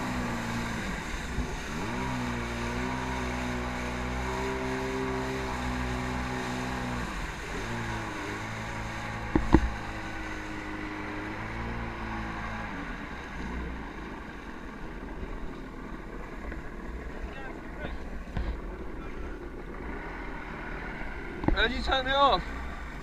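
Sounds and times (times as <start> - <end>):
jet ski engine running: 0.0 - 23.0
wind and water noise: 0.0 - 23.0
sharp knocks: 9.3 - 9.8.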